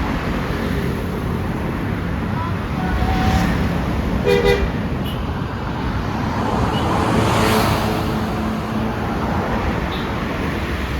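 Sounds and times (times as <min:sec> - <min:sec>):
vehicle passing close by: 0:05.8 - 0:09.8.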